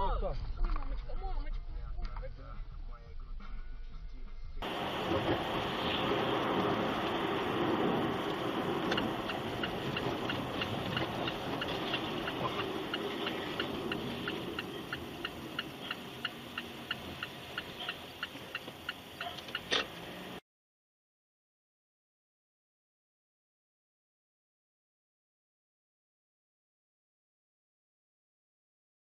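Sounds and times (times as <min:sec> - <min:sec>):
engine and road hum: 0:00.6 - 0:20.4
turn signal relay ticking: 0:04.6 - 0:20.4.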